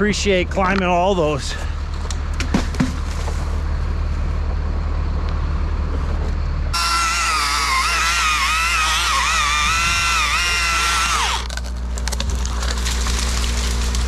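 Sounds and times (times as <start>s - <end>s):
truck engine humming: 0.0s - 14.0s
high-pitched motor whine: 6.6s - 14.0s.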